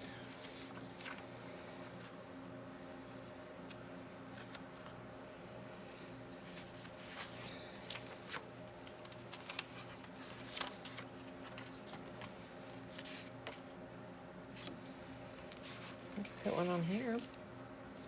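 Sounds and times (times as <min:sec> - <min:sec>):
steady low hum: 0:00.0 - 0:18.0
paper rustling: 0:00.2 - 0:02.2, 0:03.7 - 0:05.0, 0:06.4 - 0:13.6.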